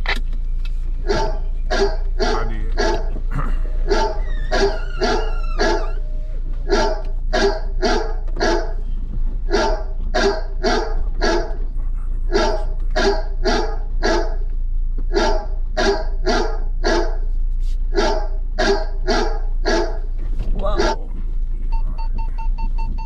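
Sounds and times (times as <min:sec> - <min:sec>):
steady low hum: 0:00.0 - 0:23.0
dog barking: 0:01.0 - 0:03.1, 0:03.7 - 0:06.0, 0:06.6 - 0:08.8, 0:09.5 - 0:11.7, 0:12.3 - 0:14.4, 0:15.1 - 0:17.3, 0:17.9 - 0:20.1, 0:20.8 - 0:21.0.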